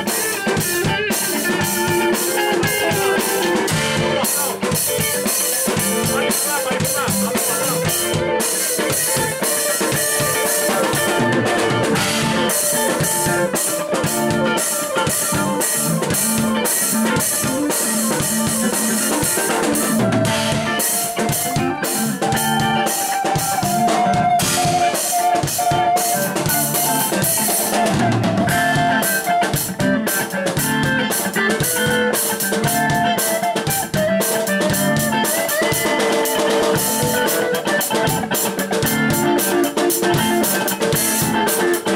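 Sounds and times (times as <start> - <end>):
drum kit beat: 0.0 - 41.9
guitar: 0.0 - 41.9.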